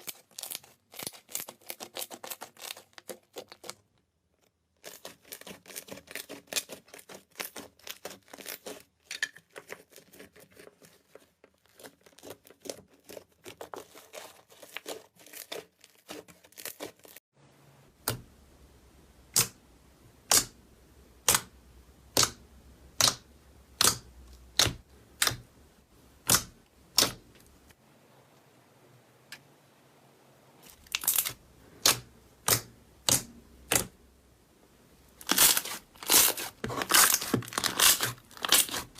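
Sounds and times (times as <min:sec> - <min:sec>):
slime crackling and popping: 0:00.0 - 0:03.8, 0:26.2 - 0:27.2, 0:30.7 - 0:33.9, 0:35.2 - 0:38.9.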